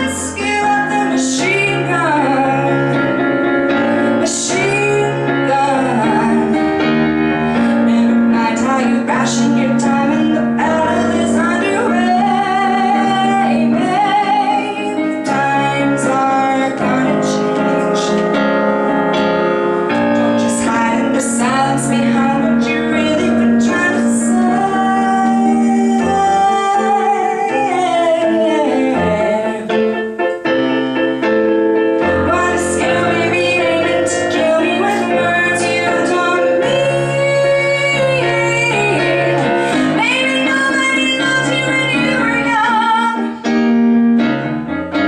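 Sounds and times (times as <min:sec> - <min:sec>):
woman singing pop ballad: 0:00.0 - 0:18.5, 0:20.0 - 0:29.9, 0:32.0 - 0:43.6
piano accompaniment: 0:00.0 - 0:45.0.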